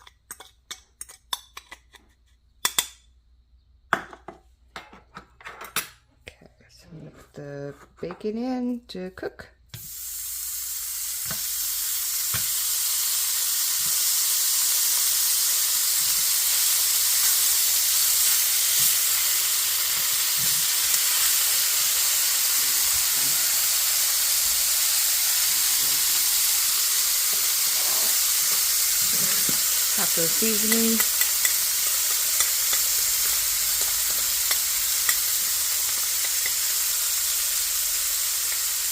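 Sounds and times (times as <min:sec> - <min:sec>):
bacon sizzling in a frying pan: 0:09.7 - 0:38.9.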